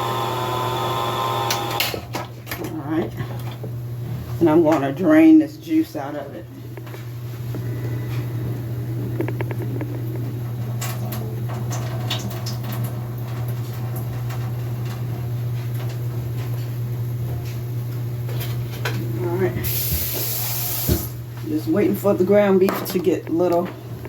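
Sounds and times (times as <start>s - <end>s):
steady low hum: 0.0s - 20.0s
can and liquid ticks and patters: 9.1s - 10.4s.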